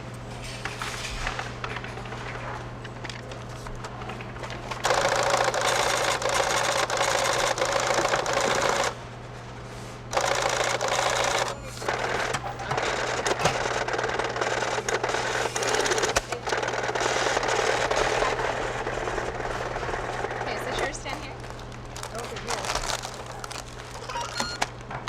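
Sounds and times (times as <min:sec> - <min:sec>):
receipt printer rattling: 0:04.8 - 0:09.0, 0:10.1 - 0:24.8
light checkout clatter: 0:10.2 - 0:25.0.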